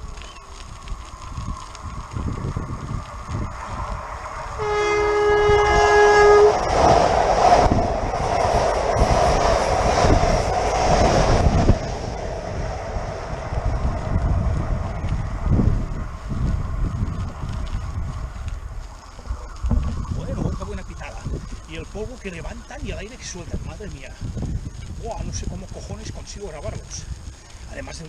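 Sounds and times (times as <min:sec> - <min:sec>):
wind buffeting microphone: 0:00.0 - 0:28.0
train rushing past: 0:04.0 - 0:14.8
train horn blast: 0:04.6 - 0:06.7.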